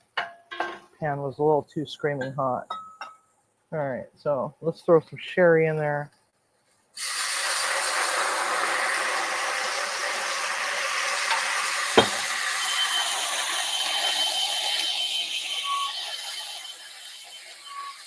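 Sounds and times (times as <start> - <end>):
sherry sizzling in a hot pan: 7.0 - 18.0
sharp knock: 12.0 - 12.3
faint steady high tone: 12.0 - 18.0.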